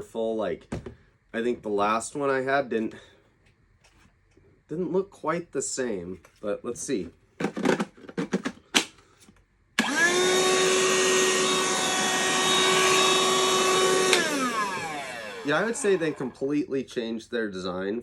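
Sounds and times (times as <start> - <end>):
handheld vacuum motor whine: 9.8 - 16.4.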